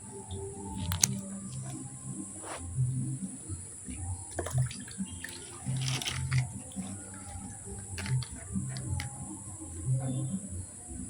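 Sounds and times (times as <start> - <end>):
scattered clicks: 0.3 - 1.8, 5.3 - 9.6
water splashing and sloshing: 3.4 - 10.2.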